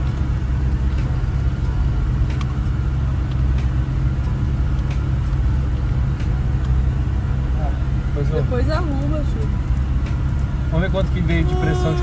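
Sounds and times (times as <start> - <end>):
road noise: 0.0 - 12.0
faint light ticks: 0.1 - 5.4, 6.2 - 6.8.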